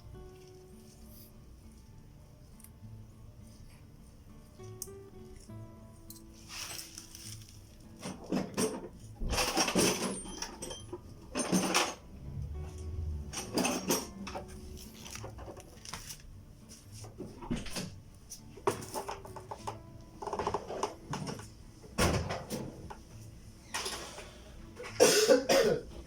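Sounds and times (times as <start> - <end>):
metal clinking and scraping: 6.1 - 12.1, 13.3 - 16.0.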